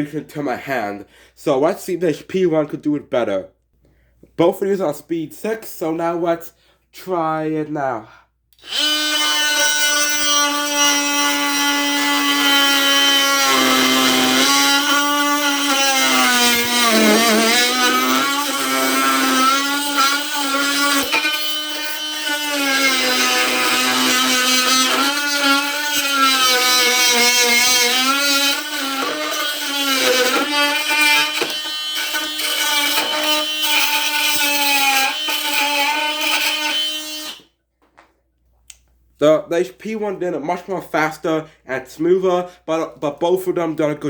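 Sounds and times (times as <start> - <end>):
oscillating multi-tool cutting wood: 8.6 - 37.5.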